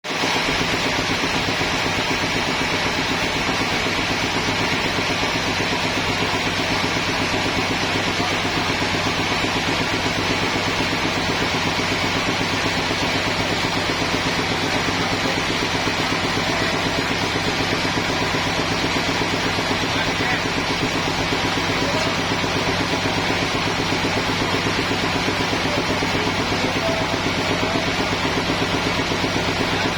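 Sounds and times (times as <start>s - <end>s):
sawmill machinery hum: 0.1s - 29.9s.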